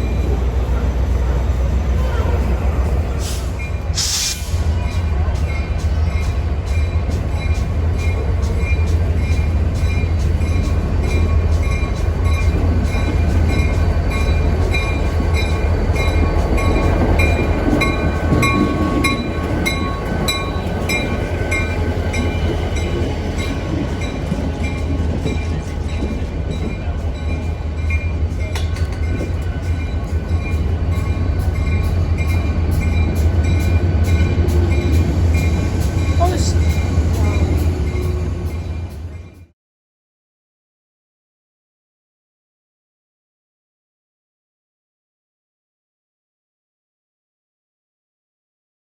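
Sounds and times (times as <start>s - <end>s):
train rumbling: 0.0s - 39.5s.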